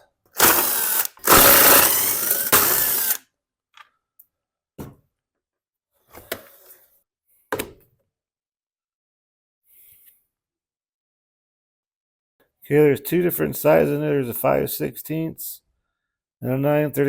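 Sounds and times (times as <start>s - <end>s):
power driver spinning out fasteners: 0.4s - 3.2s.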